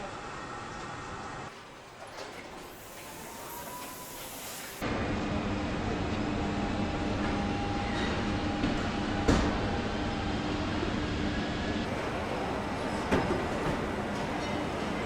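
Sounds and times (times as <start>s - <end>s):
machinery humming: 11.9s - 15.0s.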